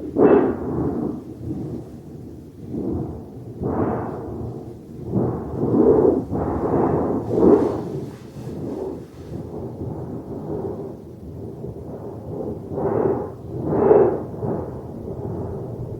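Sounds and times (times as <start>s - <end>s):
deep thunder rumbles: 4.3s - 15.9s.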